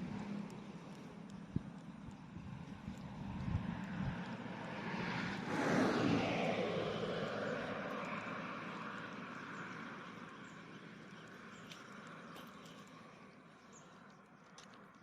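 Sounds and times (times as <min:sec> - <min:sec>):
vehicle passing: 0:02.8 - 0:10.6.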